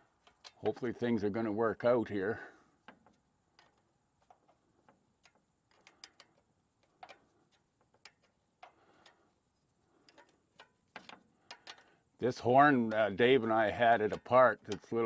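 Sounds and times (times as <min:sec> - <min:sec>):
faint clicks and taps: 0:02.8 - 0:09.3, 0:09.9 - 0:12.0, 0:12.8 - 0:15.0.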